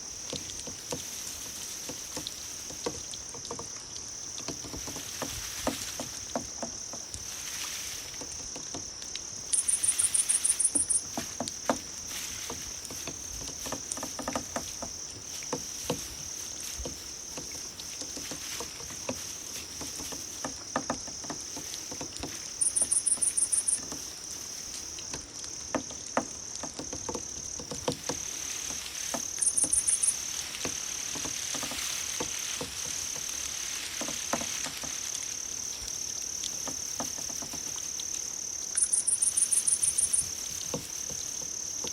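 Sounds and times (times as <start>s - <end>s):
crickets trilling: 0.0s - 41.9s
soft clicks and patter: 0.2s - 41.9s
loud pulsed cricket chirp: 9.4s - 19.6s, 22.4s - 25.7s, 27.8s - 31.0s, 37.9s - 41.9s.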